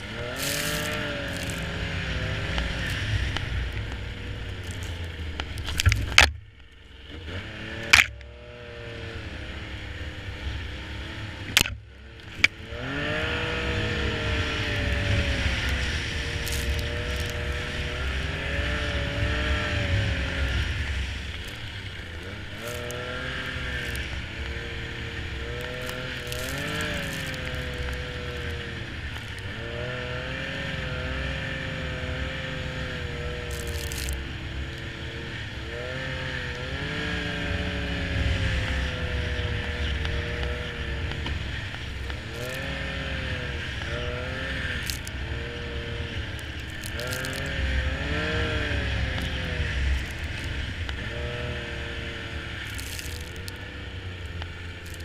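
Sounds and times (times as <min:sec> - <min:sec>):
snowmobile engine revving: 0:00.0 - 0:06.3, 0:06.9 - 0:55.0.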